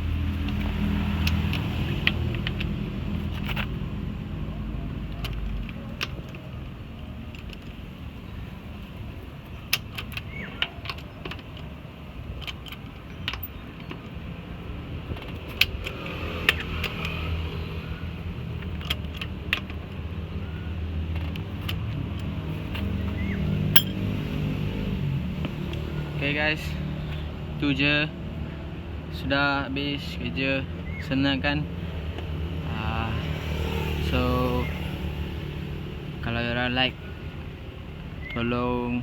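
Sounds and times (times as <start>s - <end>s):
hand tools clicking and clinking: 0.3s - 3.9s, 9.6s - 14.2s, 21.1s - 24.2s.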